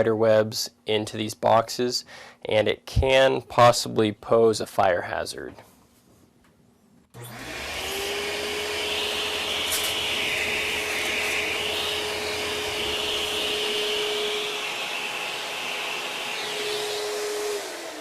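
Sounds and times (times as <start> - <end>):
vacuum cleaner running: 7.2 - 18.0.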